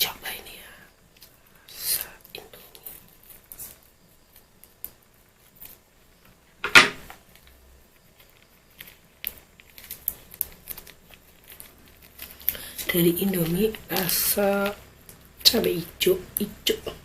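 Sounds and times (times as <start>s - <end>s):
small clicks and handling noises: 2.7s - 15.6s.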